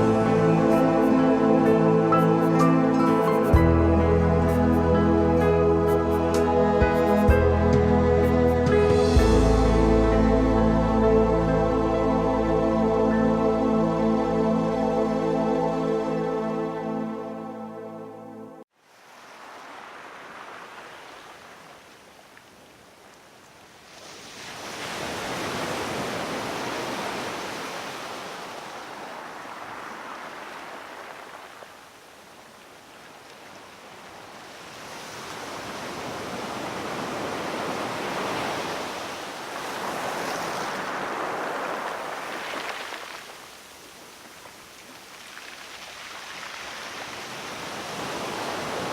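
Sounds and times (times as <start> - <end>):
waves breaking on shore: 18.8 - 23.1, 23.7 - 48.9.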